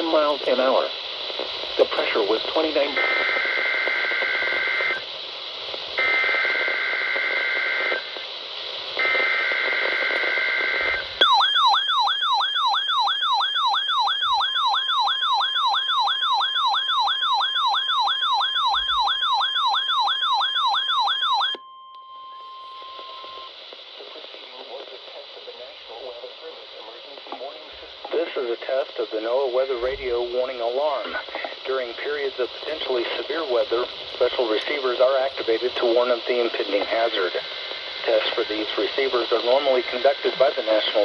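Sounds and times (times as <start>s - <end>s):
warbling siren-like alert tone: 11.2s - 21.6s
steady single alarm tone: 11.2s - 23.5s.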